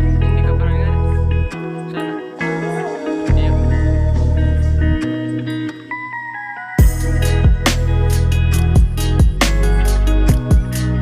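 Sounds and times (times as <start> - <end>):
heavy bass line: 0.0 - 1.6, 2.5 - 5.3, 6.8 - 11.0
guitar music: 0.0 - 11.0.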